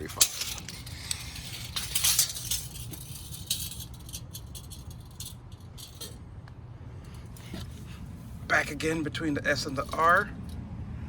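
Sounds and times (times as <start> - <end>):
metal tape measure rattling: 0.0 - 6.2, 9.6 - 10.6.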